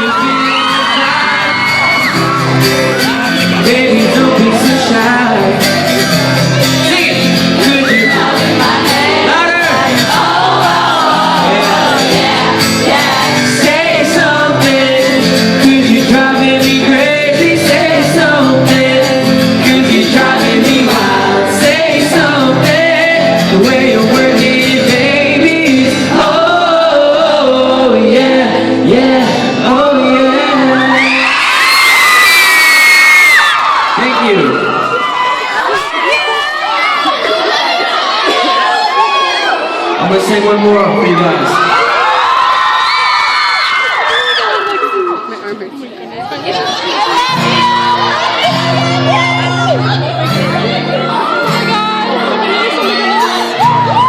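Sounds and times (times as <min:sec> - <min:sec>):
audience shouting: 0:00.0 - 0:04.0, 0:05.7 - 0:14.4, 0:30.0 - 0:45.6, 0:46.2 - 0:54.0
loud backing track: 0:00.0 - 0:39.1, 0:46.0 - 0:54.0
man singing pop: 0:03.2 - 0:31.3.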